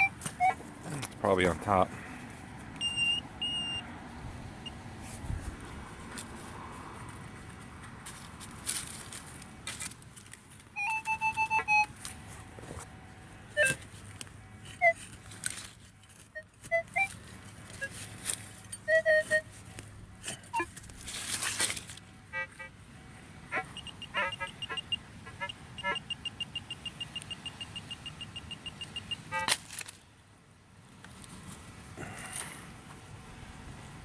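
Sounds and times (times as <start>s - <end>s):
metal detector beeps: 0.0s - 0.7s, 2.8s - 5.2s, 10.8s - 20.8s, 23.5s - 29.9s
digging in soil: 0.0s - 22.6s, 30.9s - 32.9s.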